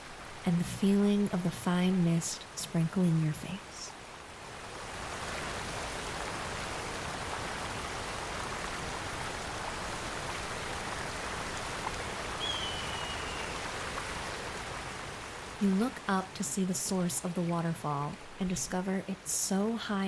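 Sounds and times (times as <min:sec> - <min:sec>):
waterfall rushing: 0:04.4 - 0:18.8
thin falling whistle: 0:12.4 - 0:13.5.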